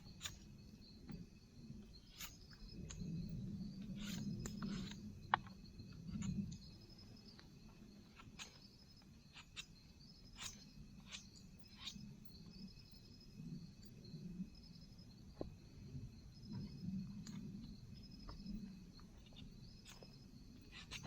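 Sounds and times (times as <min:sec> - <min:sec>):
crickets trilling: 0:00.0 - 0:21.0
sharp clicks and light knocks: 0:04.0 - 0:06.6.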